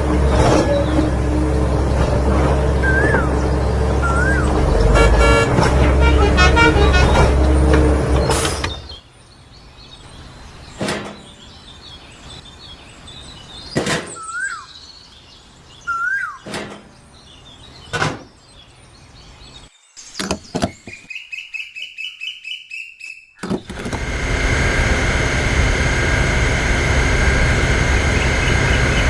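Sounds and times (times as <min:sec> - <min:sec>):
loud horn-like sound: 0:00.0 - 0:08.7
birds chirping: 0:00.0 - 0:23.4, 0:27.5 - 0:29.0.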